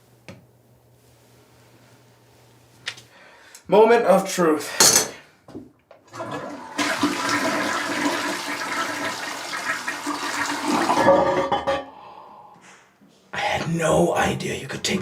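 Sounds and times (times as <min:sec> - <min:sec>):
toilet flushing: 0:06.1 - 0:11.6.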